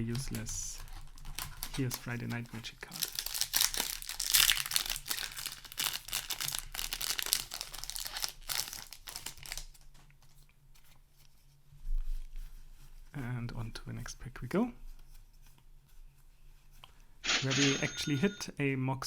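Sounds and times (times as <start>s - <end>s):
plastic wrapper crinkling and tearing: 0.2s - 10.0s.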